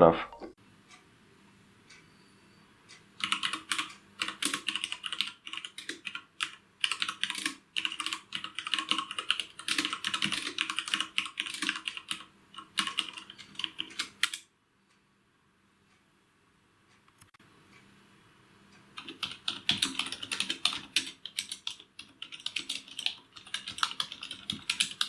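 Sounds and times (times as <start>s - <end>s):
keyboard typing: 3.2s - 14.5s, 19.0s - 25.0s.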